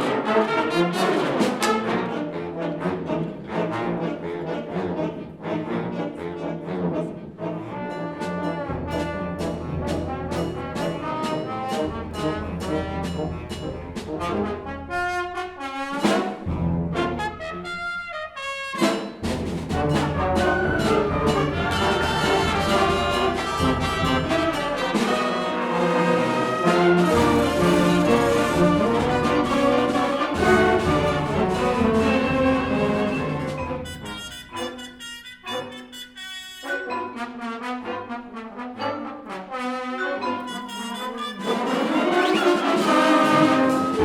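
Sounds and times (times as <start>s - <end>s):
brass: 0.0s - 44.0s
percussion strokes: 8.5s - 14.5s, 18.8s - 37.1s
concert band playing: 18.8s - 35.6s, 40.5s - 44.0s.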